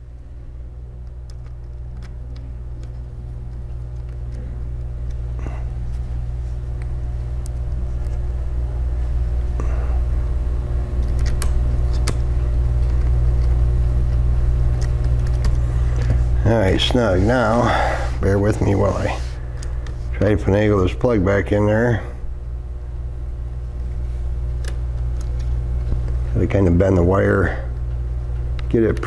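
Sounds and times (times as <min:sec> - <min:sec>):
low steady hum: 0:00.0 - 0:29.0
small laptop parts handled: 0:11.0 - 0:16.2.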